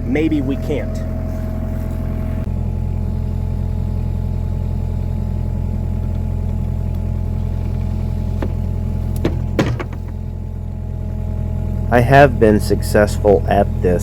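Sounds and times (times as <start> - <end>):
diesel engine running: 0.0 - 14.0
knocks: 8.4 - 10.2.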